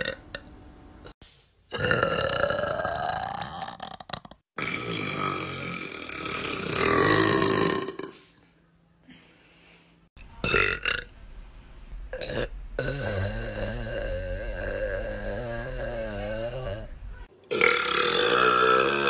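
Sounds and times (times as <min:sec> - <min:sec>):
person belching: 0:00.0 - 0:00.5, 0:01.7 - 0:08.3, 0:10.4 - 0:11.1, 0:12.2 - 0:16.9, 0:17.5 - 0:19.0.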